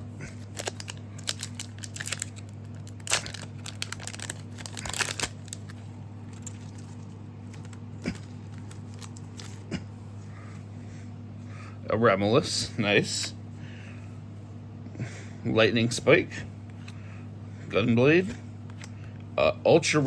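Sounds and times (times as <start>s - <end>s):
steady low hum: 0.0s - 20.0s
foil pack crinkling and tearing: 0.3s - 9.7s
cards rustling and clicking: 0.4s - 9.6s.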